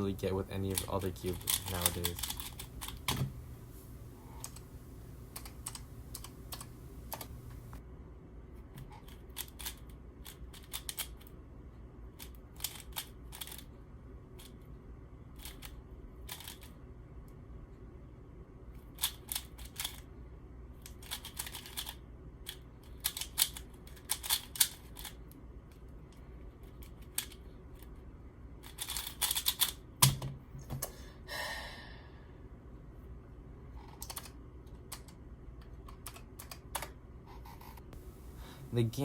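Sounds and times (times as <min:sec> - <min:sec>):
puzzle cube clicking turns: 0:00.6 - 0:03.3, 0:09.0 - 0:11.3, 0:12.2 - 0:13.7, 0:20.8 - 0:25.2, 0:28.6 - 0:29.8.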